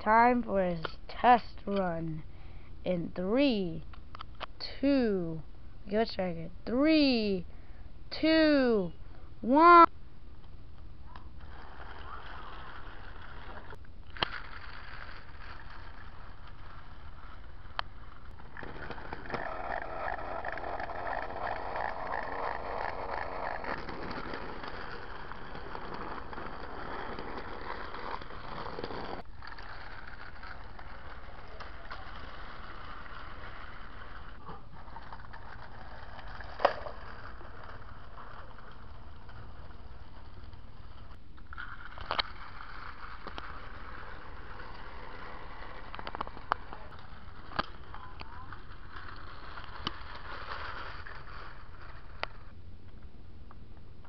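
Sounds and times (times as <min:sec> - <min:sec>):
toy train motor whirring: 0:11.4 - 0:52.5
toy train wheels rattling: 0:11.5 - 0:52.4.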